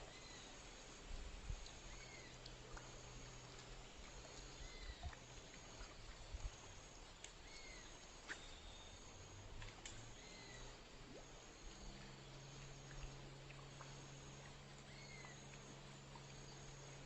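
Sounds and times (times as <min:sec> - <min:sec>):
faint clicks: 0:09.6 - 0:10.2.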